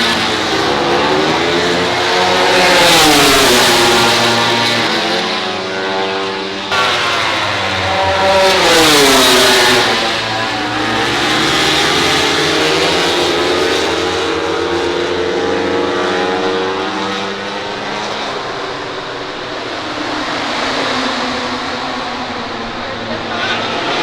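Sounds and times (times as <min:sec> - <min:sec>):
motorcycle passing by: 0:00.0 - 0:17.7
motorcycle engine accelerating: 0:00.0 - 0:24.0.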